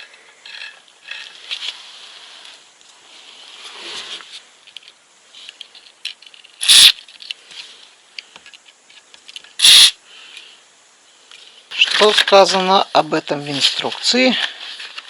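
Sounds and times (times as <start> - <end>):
metal parts clicking and scraping: 0.0 - 1.8, 4.6 - 7.6, 8.2 - 10.0
aerosol can spraying: 9.6 - 9.9.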